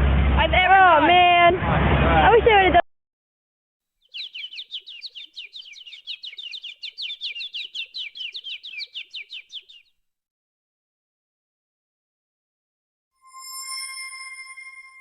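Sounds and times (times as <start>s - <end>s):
bird trilling: 4.0s - 9.9s.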